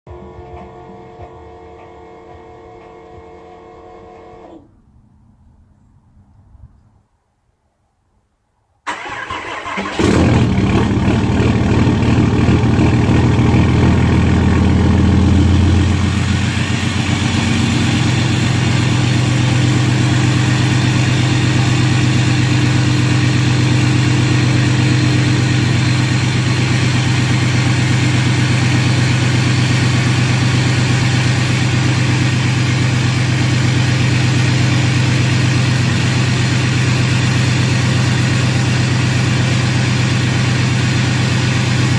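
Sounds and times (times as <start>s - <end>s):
starter motor cranking: 8.9s - 10.5s
diesel engine running: 8.9s - 41.9s.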